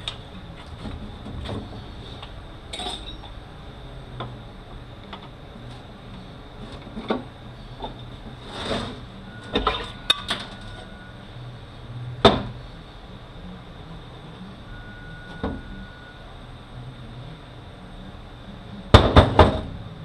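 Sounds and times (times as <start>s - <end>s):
metal scrape: 8.4s - 10.3s.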